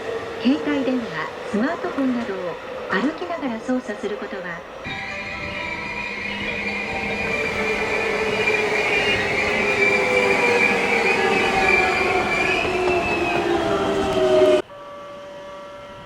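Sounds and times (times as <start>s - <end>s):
train brake and wheel squeal: 4.9s - 16.0s.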